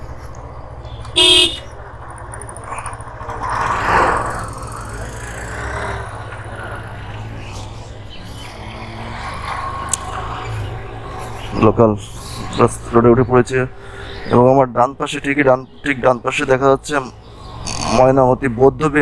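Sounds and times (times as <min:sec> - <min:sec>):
motorcycle engine rumble: 0:00.0 - 0:14.6
vehicle horn toot: 0:00.9 - 0:01.8.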